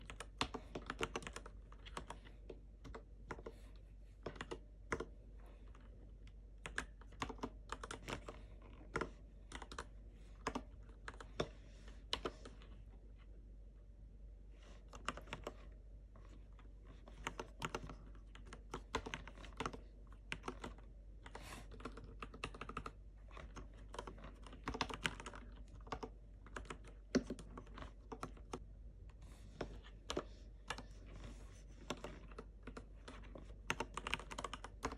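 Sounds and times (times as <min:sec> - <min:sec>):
typing on mechanical keyboard: 0:00.0 - 0:05.2, 0:06.6 - 0:11.5, 0:14.9 - 0:15.7, 0:17.1 - 0:28.6, 0:31.8 - 0:34.9.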